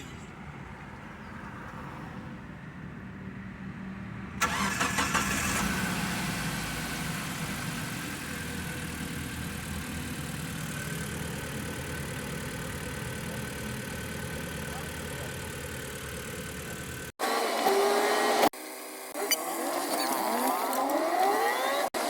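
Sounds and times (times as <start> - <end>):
van engine cranking and idling: 4.4 - 17.2.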